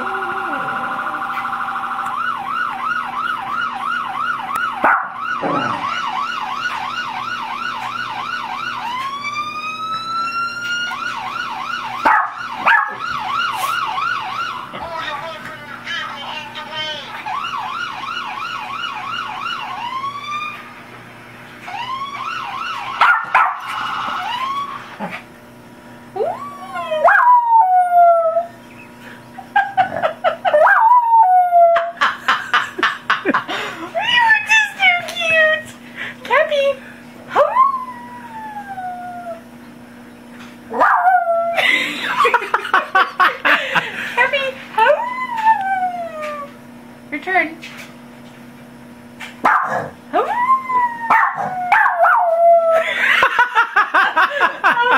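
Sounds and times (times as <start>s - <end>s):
recorded police siren: 0.0s - 14.8s, 16.8s - 20.8s, 21.6s - 25.0s, 26.1s - 28.6s, 29.6s - 32.0s, 37.3s - 39.5s, 44.8s - 46.6s, 50.1s - 54.9s
dog barking: 4.8s - 5.2s, 12.0s - 13.0s, 23.0s - 23.7s, 40.8s - 41.0s, 49.4s - 50.0s, 51.1s - 52.2s
dog howling: 26.2s - 28.6s, 37.3s - 39.5s, 40.7s - 41.6s, 44.8s - 46.6s, 50.1s - 52.8s.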